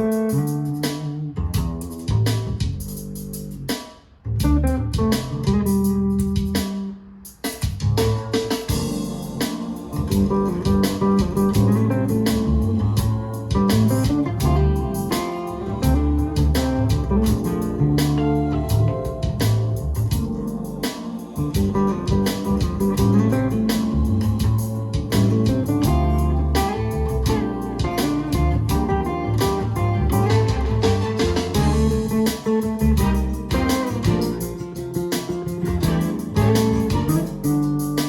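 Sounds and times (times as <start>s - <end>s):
bass line: 0.0s - 7.0s, 7.7s - 38.0s
plucked guitar notes: 8.8s - 37.7s.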